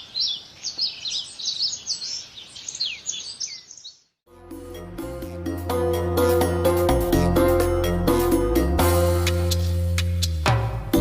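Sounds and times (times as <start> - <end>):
songbird chirping: 0.0 - 4.2
background music: 4.3 - 11.0.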